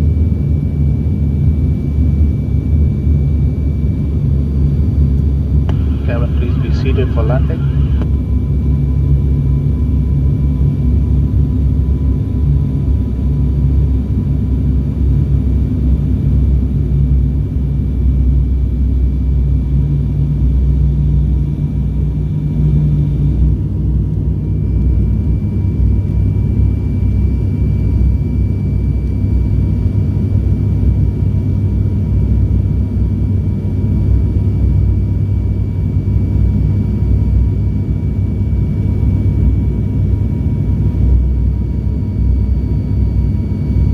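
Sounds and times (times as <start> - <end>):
turboprop cabin drone: 0.0 - 43.9
thin high engine whine: 5.3 - 9.6.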